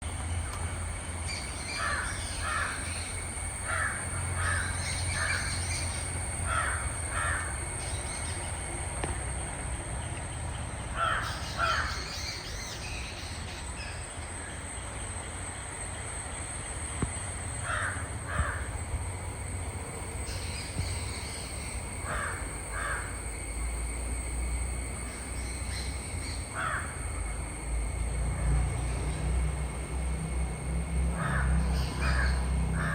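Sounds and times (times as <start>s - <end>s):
thin high-pitched whine: 0.0s - 32.9s
crows cawing: 1.7s - 7.6s, 10.9s - 12.2s, 17.6s - 18.7s, 22.0s - 23.2s, 26.5s - 27.0s, 31.2s - 32.9s.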